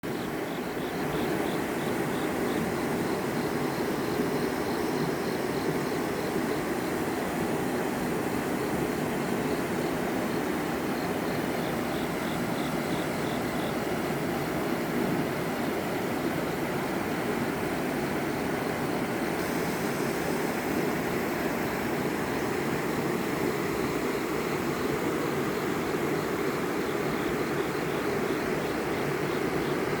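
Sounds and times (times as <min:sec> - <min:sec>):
waterfall rushing into pool: 0:13.7 - 0:30.0.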